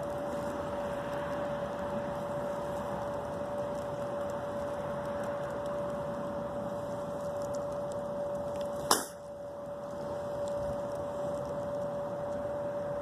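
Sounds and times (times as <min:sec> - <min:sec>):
steady high hum: 0:00.0 - 0:13.0.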